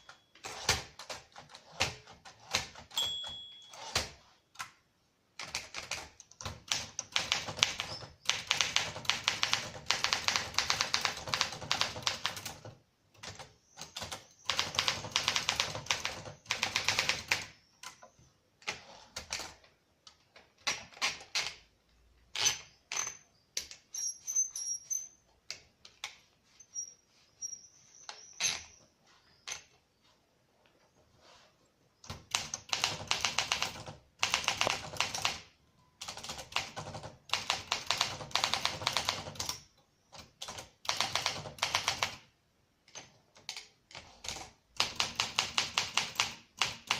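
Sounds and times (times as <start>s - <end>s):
manual typewriter keystrokes: 0.3s - 4.8s, 5.4s - 21.7s, 32.0s - 46.9s.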